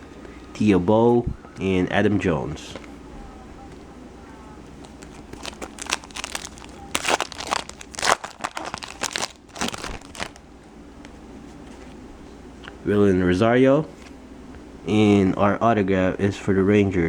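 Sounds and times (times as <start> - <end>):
foil wrapper tearing and crinkling: 4.9 - 10.4.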